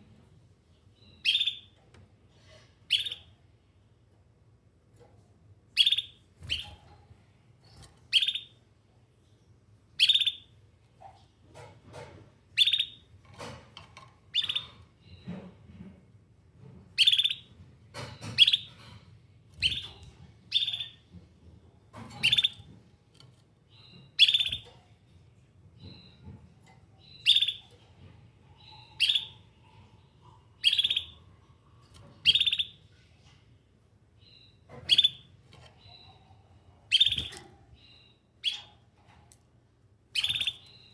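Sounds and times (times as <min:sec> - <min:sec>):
canary chirping calls: 0:01.0 - 0:01.8, 0:02.8 - 0:03.5, 0:05.7 - 0:08.6, 0:09.9 - 0:13.5, 0:14.3 - 0:15.5, 0:17.0 - 0:21.3, 0:21.9 - 0:33.4, 0:34.2 - 0:39.1, 0:40.1 - 0:40.9.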